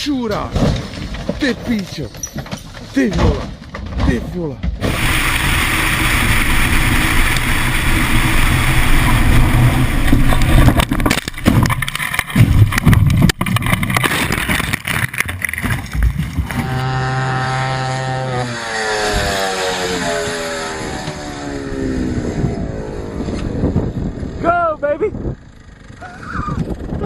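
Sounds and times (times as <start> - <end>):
road and engine noise: 0.0 - 27.0
engine running: 4.8 - 13.7, 14.4 - 27.0.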